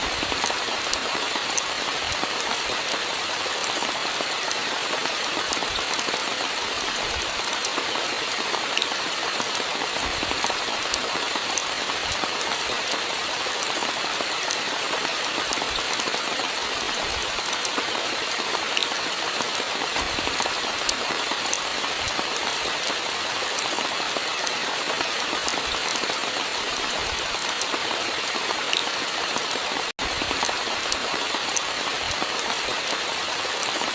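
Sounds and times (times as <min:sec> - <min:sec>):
steady rainfall: 0:00.0 - 0:33.9.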